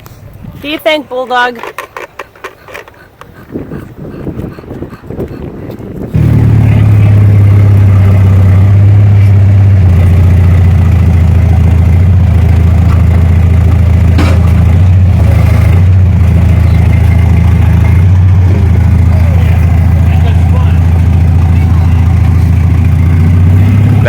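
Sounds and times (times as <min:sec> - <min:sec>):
forklift engine running: 0:06.1 - 0:24.0.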